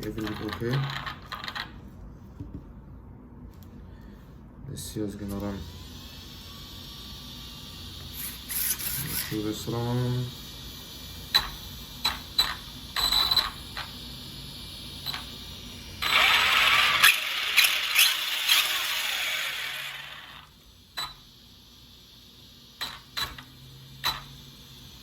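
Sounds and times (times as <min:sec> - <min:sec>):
electric motor whirring and whining: 0:16.0 - 0:20.5.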